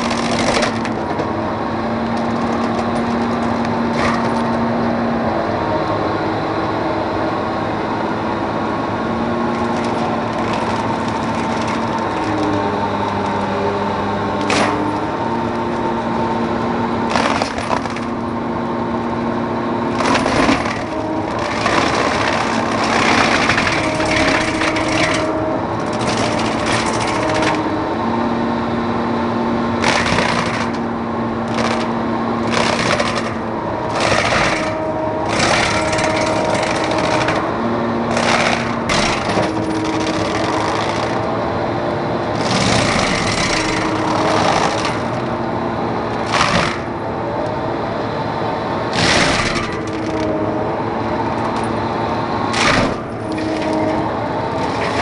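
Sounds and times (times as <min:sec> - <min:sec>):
wood cracking and splintering: 0:00.0 - 0:01.3, 0:02.0 - 0:04.6, 0:09.5 - 0:13.4, 0:14.4 - 0:15.0, 0:17.1 - 0:18.2, 0:19.9 - 0:27.7, 0:29.8 - 0:37.5, 0:38.1 - 0:41.3, 0:42.4 - 0:45.3, 0:46.2 - 0:46.9, 0:49.0 - 0:50.3, 0:52.5 - 0:54.0, 0:54.6 - 0:55.0
mulcher machine hum: 0:00.0 - 0:55.0.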